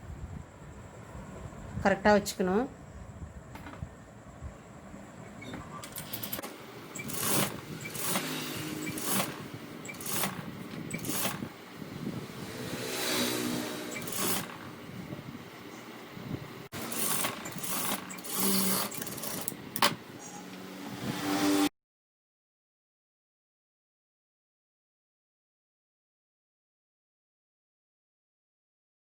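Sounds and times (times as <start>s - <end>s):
electric sewing machine running: 5.8s - 15.0s, 16.7s - 21.7s.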